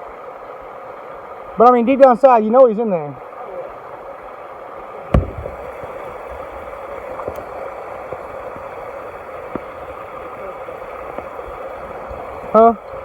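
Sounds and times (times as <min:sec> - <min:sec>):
creek water over rocks: 0:00.0 - 0:13.0
sharp knock: 0:05.2 - 0:05.7.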